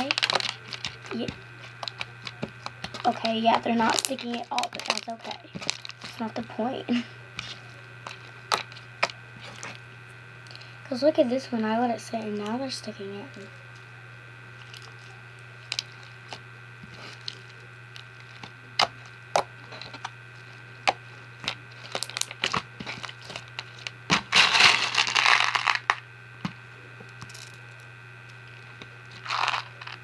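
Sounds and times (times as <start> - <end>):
slime beads crackling: 0.0 - 6.4, 20.8 - 26.0, 29.1 - 30.0.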